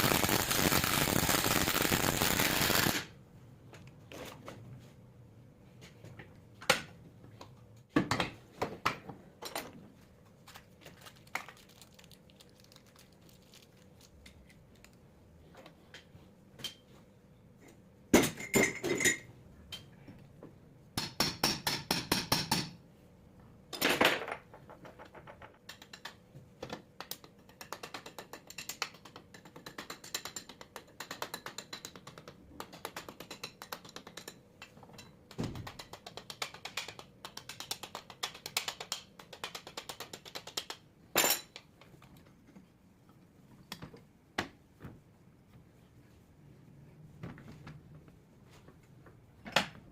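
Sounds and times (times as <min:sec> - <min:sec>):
hand tools clicking and tapping: 0:25.3 - 0:40.8.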